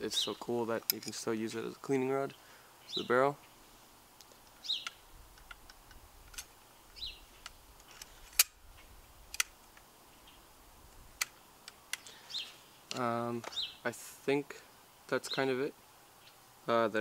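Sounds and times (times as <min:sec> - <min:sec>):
bird chirping: 0:00.1 - 0:00.5, 0:02.2 - 0:03.8, 0:04.5 - 0:05.1, 0:06.8 - 0:07.5, 0:10.1 - 0:10.5, 0:11.9 - 0:13.9, 0:15.2 - 0:16.5.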